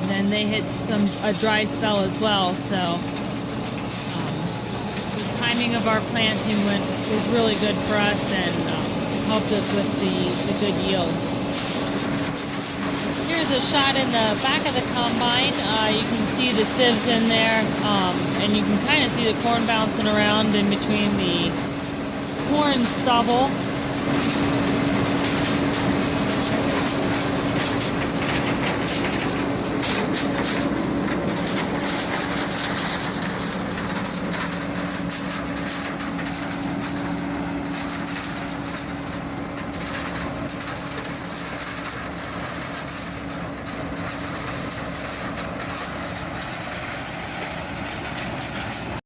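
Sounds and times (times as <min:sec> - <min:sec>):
combine harvester drone: 0:00.0 - 0:49.0.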